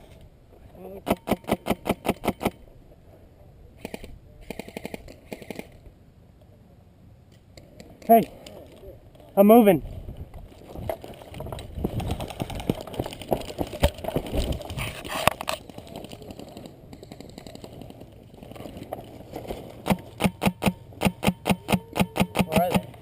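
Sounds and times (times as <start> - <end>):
running footsteps: 10.3 - 20.5
gear rustling: 10.4 - 20.2
airsoft guns firing: 19.8 - 23.0.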